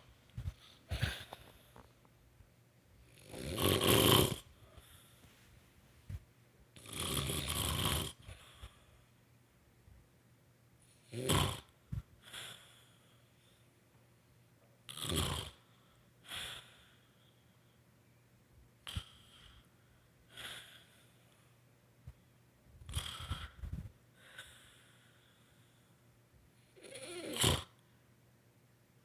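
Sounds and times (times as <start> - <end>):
soft breathing: 0.0 - 2.1, 4.4 - 6.3, 8.2 - 9.3, 23.1 - 26.2
woman snoring: 3.1 - 4.5, 6.8 - 8.3, 11.1 - 11.7, 14.9 - 15.6, 22.9 - 23.6, 26.7 - 27.8.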